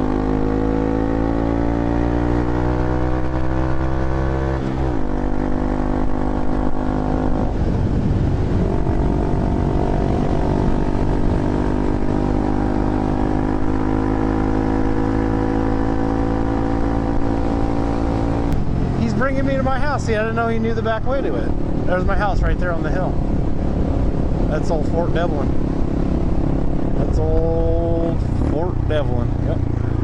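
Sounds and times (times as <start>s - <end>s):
motorcycle engine running: 0.0s - 30.0s.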